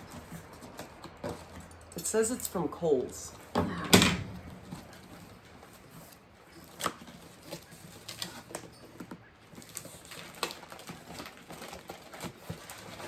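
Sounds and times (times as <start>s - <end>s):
packaging crackling: 4.4s - 13.0s.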